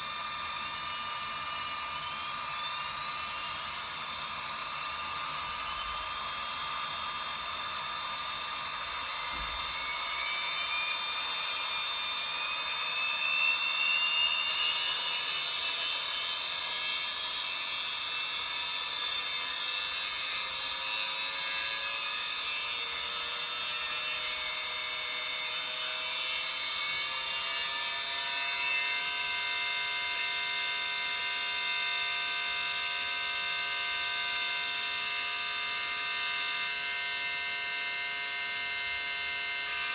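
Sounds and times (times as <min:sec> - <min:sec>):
washing machine motor whining: 0:00.0 - 0:19.0.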